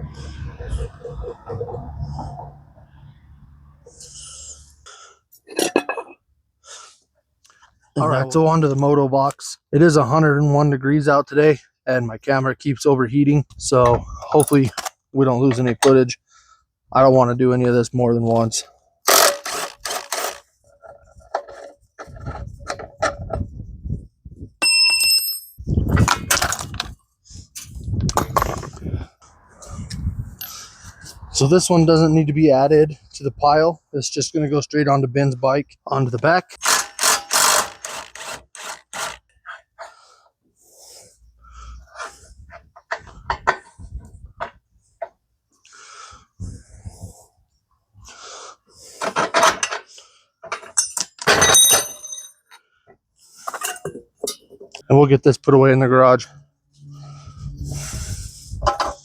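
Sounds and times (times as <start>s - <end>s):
heavy breathing: 0.0s - 5.3s, 28.8s - 31.3s, 39.8s - 42.6s, 45.6s - 49.2s, 56.3s - 58.6s
metal tool clanging: 5.4s - 6.2s, 28.1s - 28.8s, 36.5s - 38.0s, 50.4s - 52.6s, 53.4s - 54.8s
metal parts clattering: 19.1s - 22.9s, 28.2s - 28.8s, 36.6s - 39.2s, 50.5s - 52.5s
scraping and handling noise: 19.1s - 23.5s.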